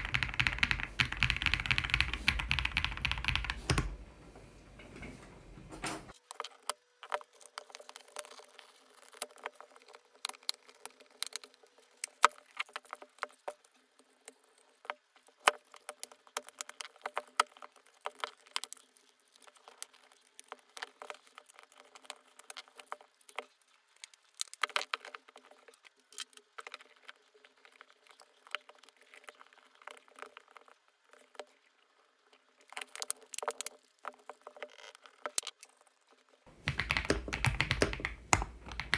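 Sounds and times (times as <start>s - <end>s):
mechanical keyboard typing: 0.0s - 6.1s, 36.5s - 38.9s.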